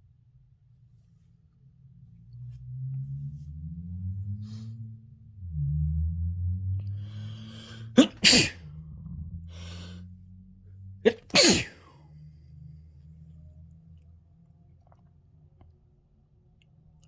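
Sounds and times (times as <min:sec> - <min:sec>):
drawn-in breath: 0:07.0 - 0:08.3, 0:09.5 - 0:10.0
person sneezing: 0:07.5 - 0:08.6, 0:11.1 - 0:11.8.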